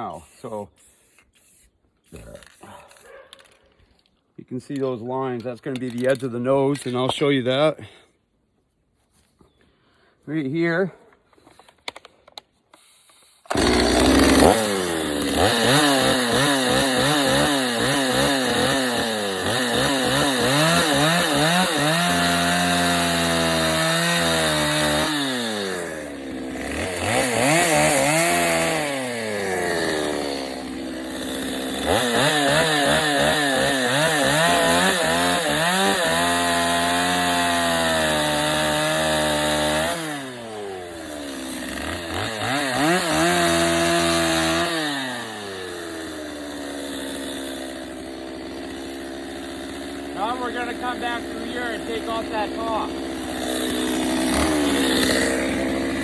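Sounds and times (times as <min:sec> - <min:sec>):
chainsaw cutting wood: 0:11.4 - 0:56.0.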